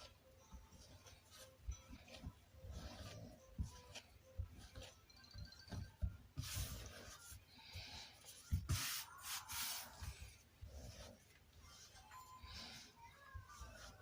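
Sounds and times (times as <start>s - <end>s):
soft thumps of dough: 0.0s - 7.2s
dough rubbing and scraping: 0.0s - 14.0s.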